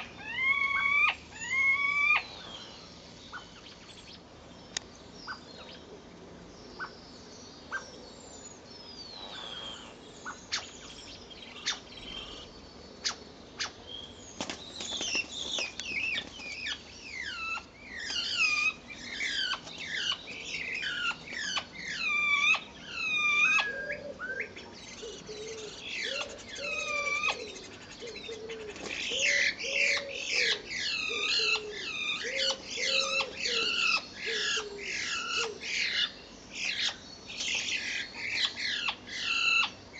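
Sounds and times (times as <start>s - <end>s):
high downward-sweeping bird calls: 0.0s - 5.9s, 6.6s - 39.9s
starlings calling: 0.0s - 39.9s
low wavering bird call: 21.9s - 35.6s.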